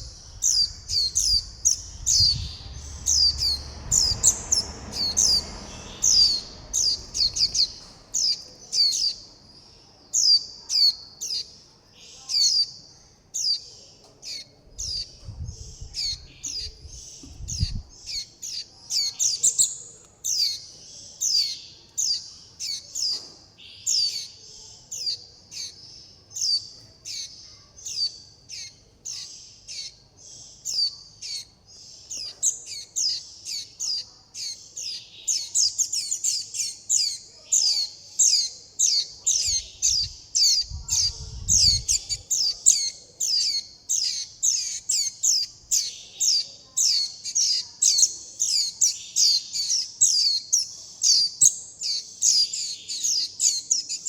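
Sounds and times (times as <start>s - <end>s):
young birds high begging calls: 0.0s - 9.3s, 26.4s - 54.0s.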